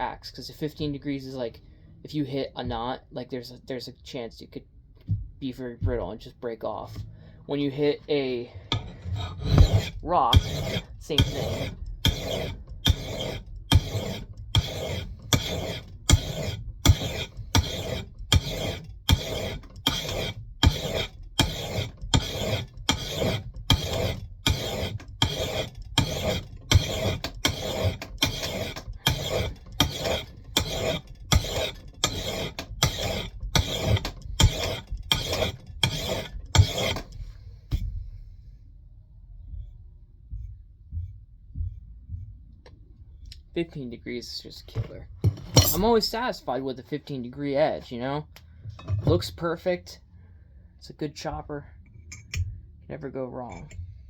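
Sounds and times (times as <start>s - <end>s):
metal file rasping on axe: 7.8s - 37.8s, 45.3s - 46.4s.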